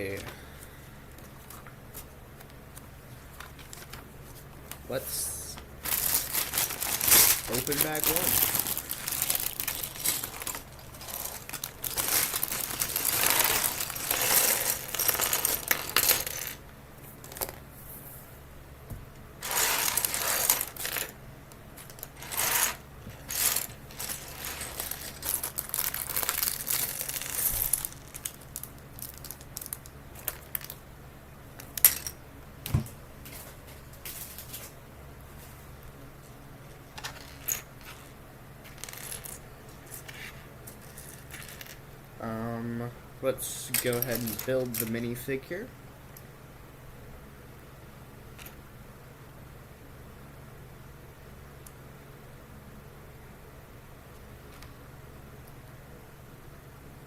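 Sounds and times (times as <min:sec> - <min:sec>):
plastic pieces clattering: 0:05.8 - 0:16.6, 0:19.4 - 0:21.2, 0:21.8 - 0:30.8, 0:37.0 - 0:41.8.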